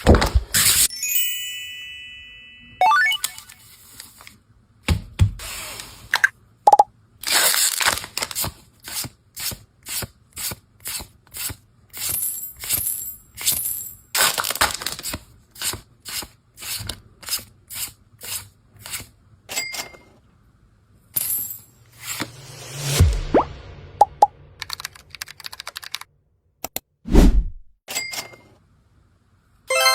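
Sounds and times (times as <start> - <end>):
brief tone: 2.4 - 3.6
cards swishing: 22.0 - 22.4.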